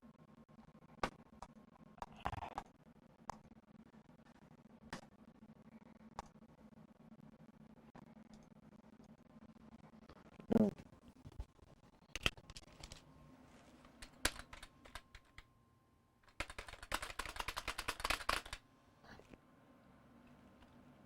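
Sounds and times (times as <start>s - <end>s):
rapid clicking: 13.9s - 15.4s, 16.2s - 18.6s.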